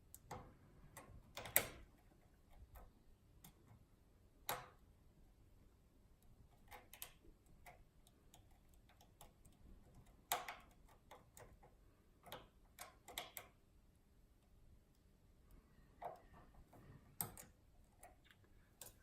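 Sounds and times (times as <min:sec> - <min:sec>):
lock pick clicking in lock: 0:00.1 - 0:03.6, 0:06.6 - 0:13.6, 0:17.2 - 0:18.2.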